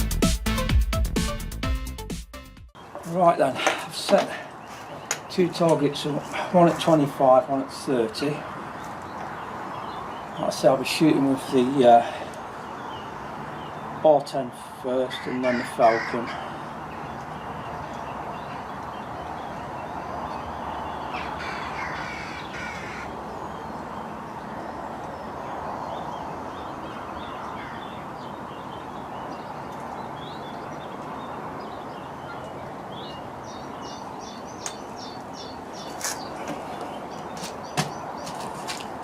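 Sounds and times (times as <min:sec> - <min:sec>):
birds calling: 0:02.8 - 0:39.0.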